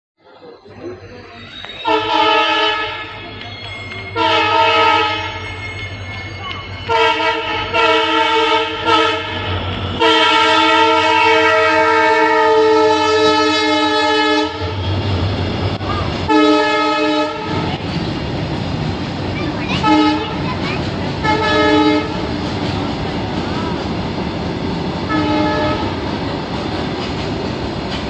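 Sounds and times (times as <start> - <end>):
moving train rumble: 0.2 - 28.0
locomotive horn blasts: 1.8 - 3.2, 4.2 - 5.4, 6.9 - 14.9, 16.3 - 17.8, 19.8 - 20.4, 21.2 - 22.3, 25.1 - 26.0.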